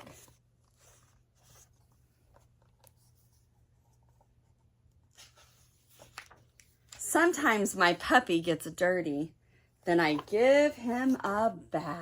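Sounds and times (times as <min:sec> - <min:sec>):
book pages rustling: 0:00.0 - 0:07.7, 0:10.0 - 0:11.4.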